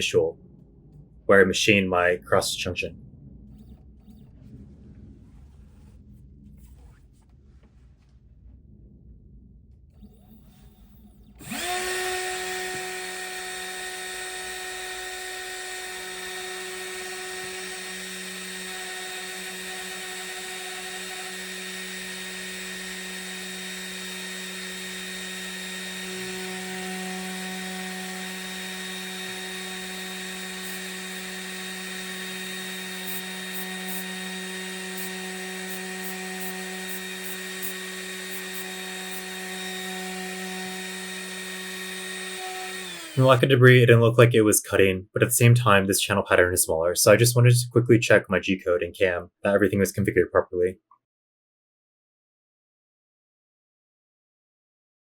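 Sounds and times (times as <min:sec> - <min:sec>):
router spindle high-pitched whine: 0:10.0 - 0:44.3.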